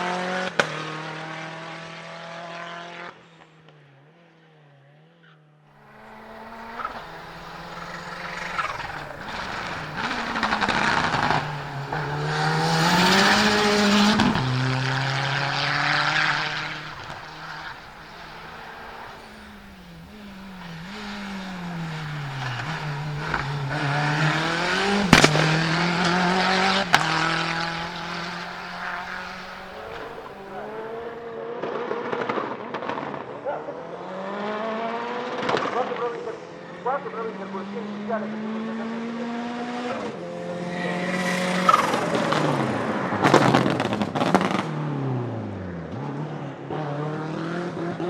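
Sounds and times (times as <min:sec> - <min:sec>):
race car accelerating: 0:00.0 - 0:04.3, 0:05.2 - 0:48.0
sharp exhaust bangs: 0:05.8 - 0:30.9.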